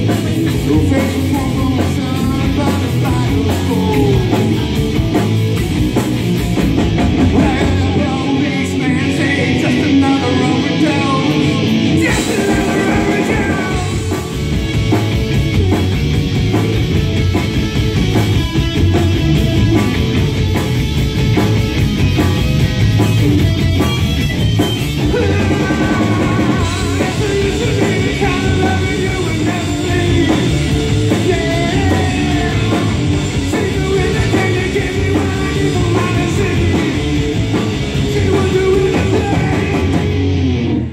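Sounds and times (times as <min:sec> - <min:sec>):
person singing: 0:00.0 - 0:05.0, 0:07.2 - 0:14.5, 0:25.0 - 0:40.1
rock band playing live: 0:00.0 - 0:40.9.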